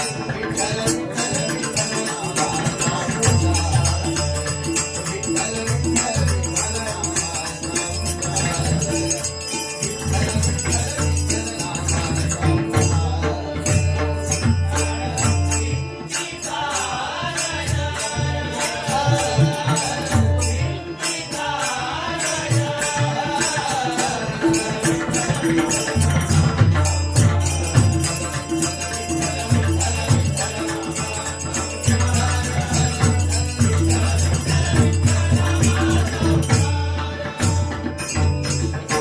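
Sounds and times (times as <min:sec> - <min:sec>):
voices chanting: 0:00.0 - 0:38.3.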